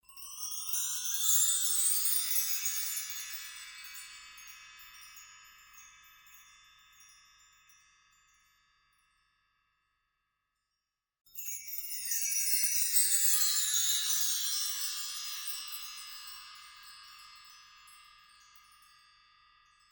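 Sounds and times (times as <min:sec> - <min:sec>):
small chiming bells run: 0:00.0 - 0:09.3, 0:11.3 - 0:19.9.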